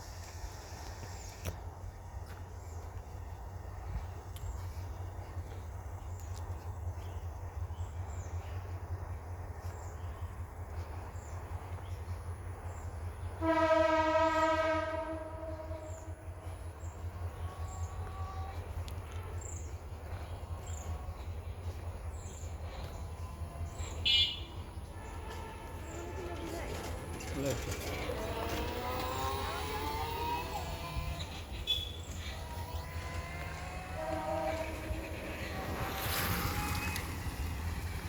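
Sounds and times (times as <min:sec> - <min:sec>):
horn single steady note: 0:13.3 - 0:19.3, 0:23.1 - 0:26.6, 0:28.1 - 0:37.3.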